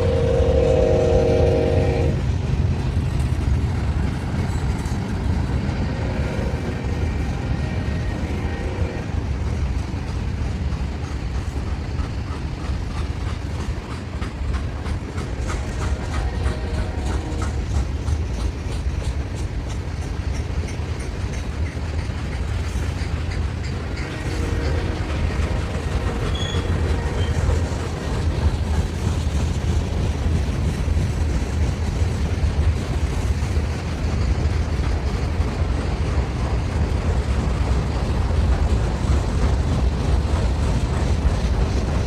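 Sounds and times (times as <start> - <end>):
locomotive horn: 0.0 - 2.3, 5.9 - 9.2, 15.5 - 17.8, 23.8 - 28.2
freight train rumbling: 0.0 - 42.0
wheels clicking over rail joints: 2.3 - 42.0.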